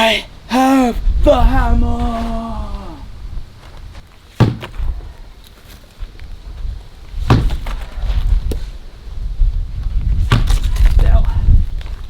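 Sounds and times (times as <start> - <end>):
sledgehammer striking brick: 4.4 - 4.8, 7.3 - 7.8, 10.3 - 10.7.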